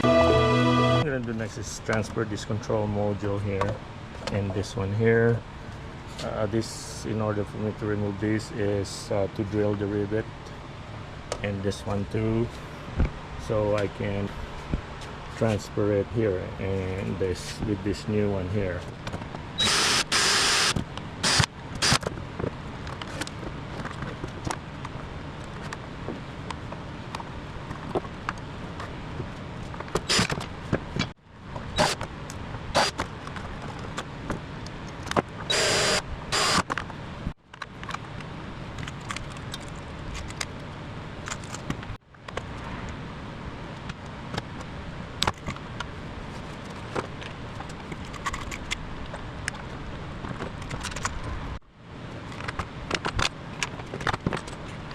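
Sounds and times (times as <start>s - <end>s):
steady background hum: 0.0s - 54.9s
power drill drilling rivets: 19.6s - 22.0s, 30.1s - 30.4s, 32.8s - 33.0s, 35.5s - 36.6s.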